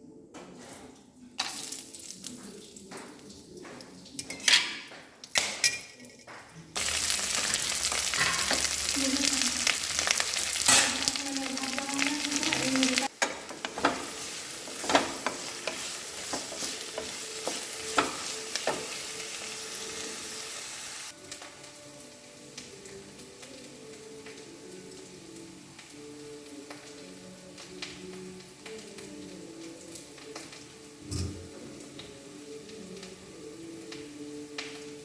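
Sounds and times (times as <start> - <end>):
food sizzling in hot oil: 1.4 - 2.9, 6.8 - 35.0
utensil tapping and scraping pan: 13.2 - 19.0.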